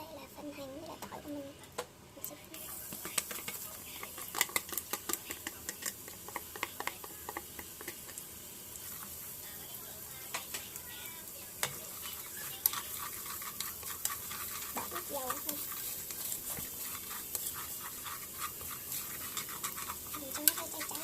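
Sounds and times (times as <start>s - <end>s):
shallots and garlic sizzling in oil: 0.0s - 21.0s.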